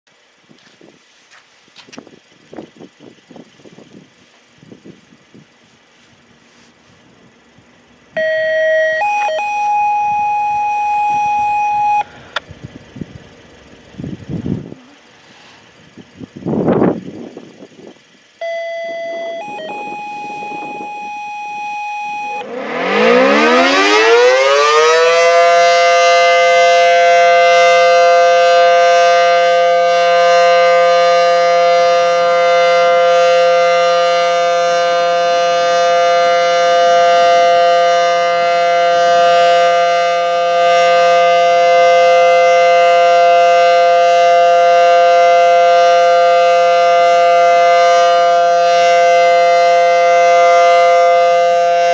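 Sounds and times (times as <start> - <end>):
quiet steady tones: 5.1 - 14.0, 17.1 - 22.8
warning siren winding up: 8.2 - 12.5, 18.4 - 51.9.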